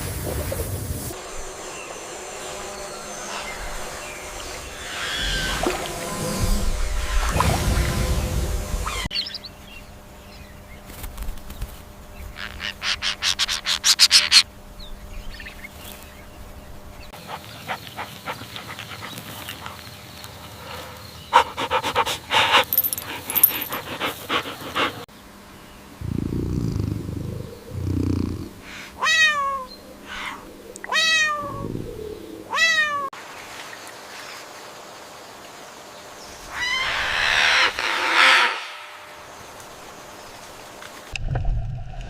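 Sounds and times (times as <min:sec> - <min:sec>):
animal panting: 0:17.2 - 0:25.1.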